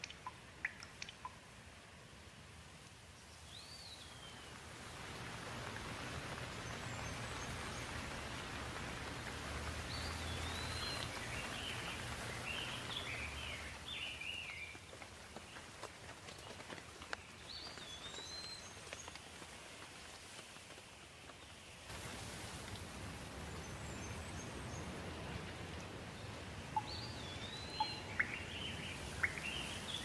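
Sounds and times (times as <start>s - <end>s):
steady rain hiss: 0.0s - 30.0s
bird chirping: 9.9s - 14.7s, 26.2s - 30.0s
bird call: 26.8s - 30.0s.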